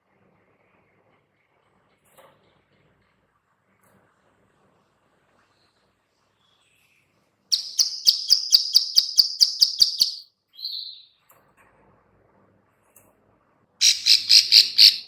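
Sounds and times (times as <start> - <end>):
bird sharp clicking call: 7.5 - 11.0, 13.8 - 15.0.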